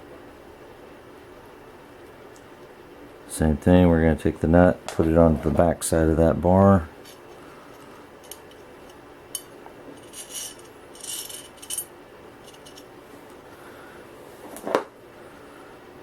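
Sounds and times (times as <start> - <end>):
small metal parts clinking: 7.7 - 12.9.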